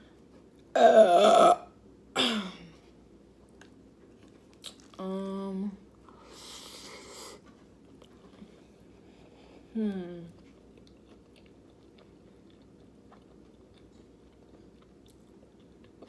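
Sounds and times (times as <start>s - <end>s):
soft chewing: 2.8s - 5.0s, 5.9s - 16.0s
woman humming mmm: 9.7s - 10.4s.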